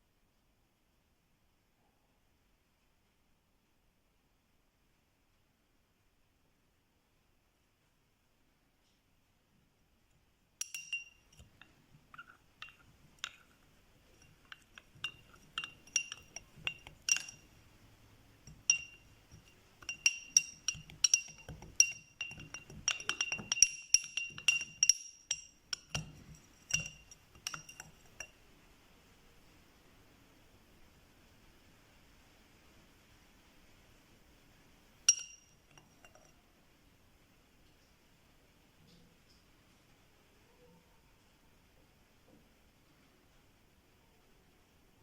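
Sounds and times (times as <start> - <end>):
spoon clinking against glass: 10.6 - 17.7, 18.4 - 28.4, 35.1 - 36.3.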